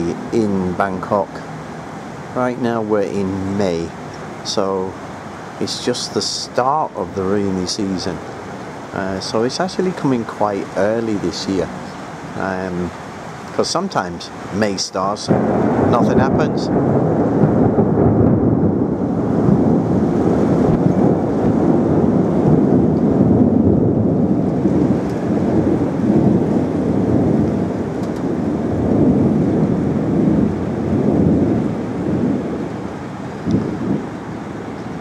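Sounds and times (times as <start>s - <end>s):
heavy rain: 0.0s - 35.0s.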